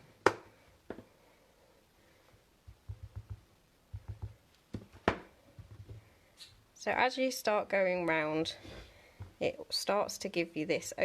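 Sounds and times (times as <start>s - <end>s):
soft taps of stamping tools: 2.7s - 6.5s.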